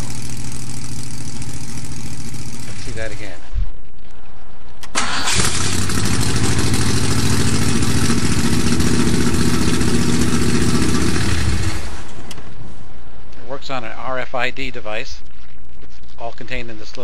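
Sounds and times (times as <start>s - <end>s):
car engine running: 0.0s - 3.2s, 5.3s - 12.3s.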